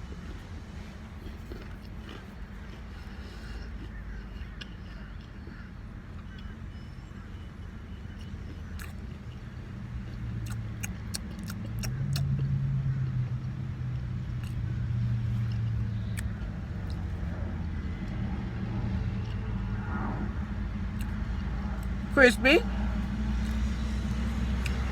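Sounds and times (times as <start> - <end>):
motor vehicle rumble: 0.0 - 24.9.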